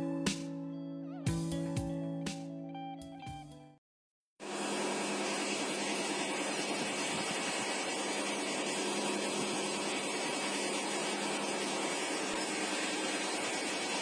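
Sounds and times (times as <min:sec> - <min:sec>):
music track: 0:00.0 - 0:03.8.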